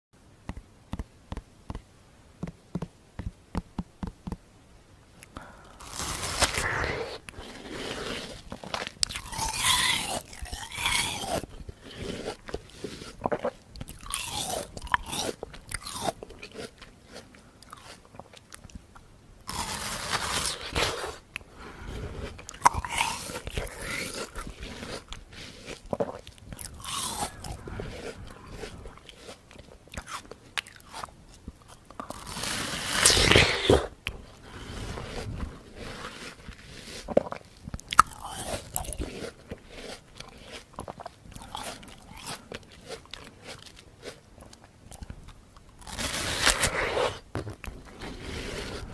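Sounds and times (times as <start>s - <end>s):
person chewing watermelon: 5.2s - 48.9s.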